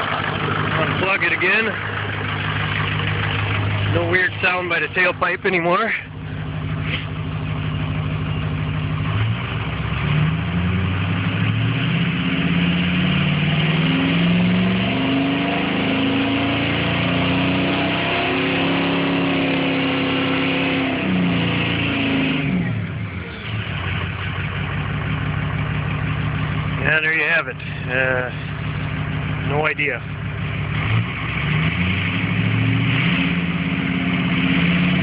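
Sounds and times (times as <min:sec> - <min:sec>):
diesel engine idling and revving: 0:00.0 - 0:35.0.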